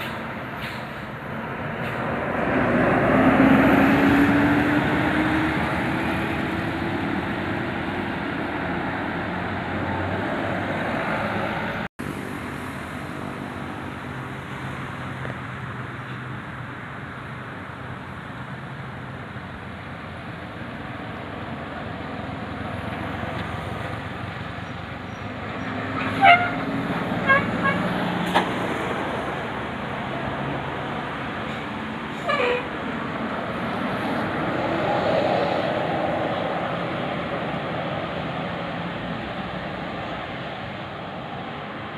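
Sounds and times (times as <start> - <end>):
large vehicle engine passing: 0.0 - 15.6
road traffic: 0.0 - 41.9
short sharp horn toots: 26.0 - 26.6, 27.2 - 27.9.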